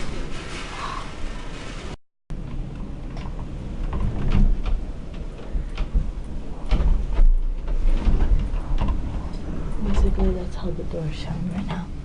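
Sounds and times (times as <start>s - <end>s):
low wind rumble: 0.0s - 12.0s
door rattling in its frame: 2.4s - 10.6s.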